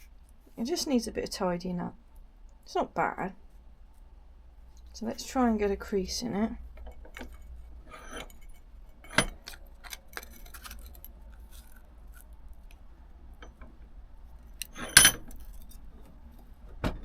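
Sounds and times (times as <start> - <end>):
metal clinking and knocking: 6.8 - 11.1, 14.6 - 15.8.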